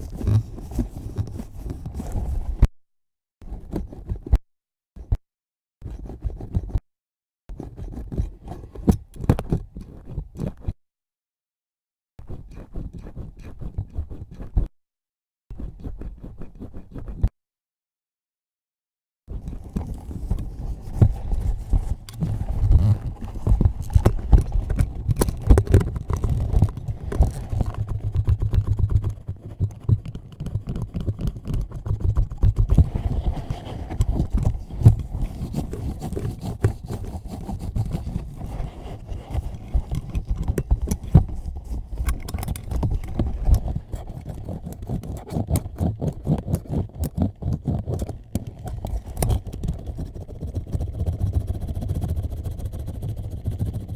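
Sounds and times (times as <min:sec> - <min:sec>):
scratching on microphone: 0:00.0 - 0:02.7, 0:03.5 - 0:04.4, 0:05.8 - 0:06.8, 0:07.5 - 0:10.8, 0:12.2 - 0:14.7, 0:15.5 - 0:17.4, 0:19.3 - 0:53.9
low rumble of handling noise: 0:19.5 - 0:30.0.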